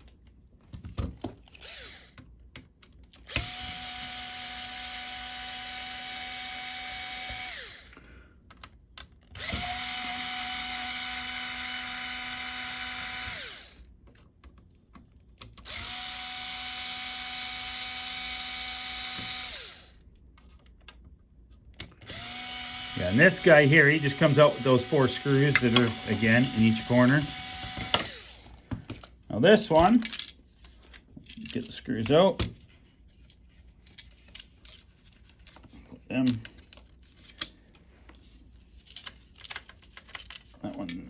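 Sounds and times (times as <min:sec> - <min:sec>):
electric screwdriver whine: 0:01.5 - 0:02.2, 0:03.3 - 0:08.0, 0:09.4 - 0:13.8, 0:15.6 - 0:20.0, 0:22.0 - 0:28.6.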